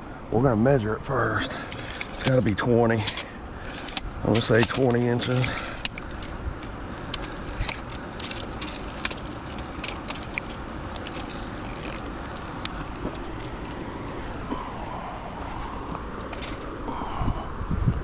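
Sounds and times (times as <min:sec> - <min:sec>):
sharp handling clicks and taps: 0:01.7 - 0:14.2.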